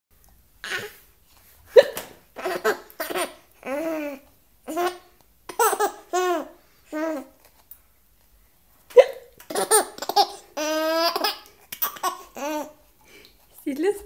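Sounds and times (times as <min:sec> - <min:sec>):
baby laughing and squealing: 0:09.5 - 0:12.8.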